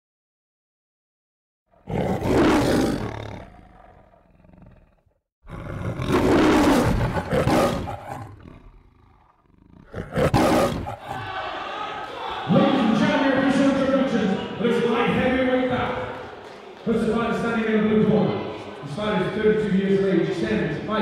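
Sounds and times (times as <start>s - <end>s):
loud rough roars: 1.8s - 11.6s.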